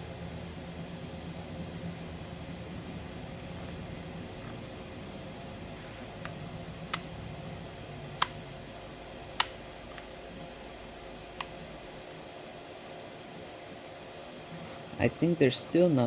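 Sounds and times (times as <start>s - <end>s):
steady low hum: 0.0s - 16.0s
sharp metallic clicks and taps: 9.4s - 10.1s.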